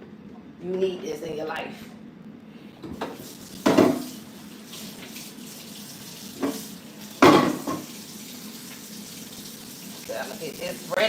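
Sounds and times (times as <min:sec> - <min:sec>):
kitchenware clattering: 0:03.0 - 0:04.1, 0:06.4 - 0:08.0.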